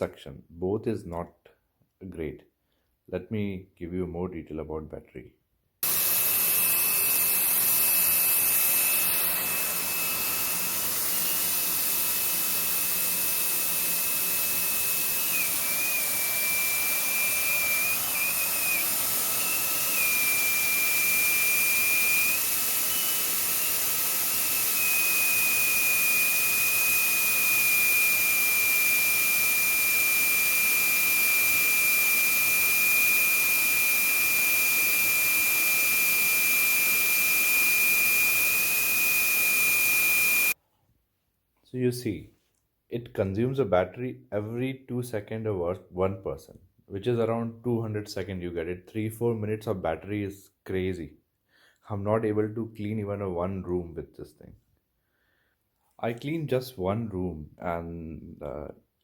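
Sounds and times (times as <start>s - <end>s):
vacuum motor whining: 5.8s - 40.6s.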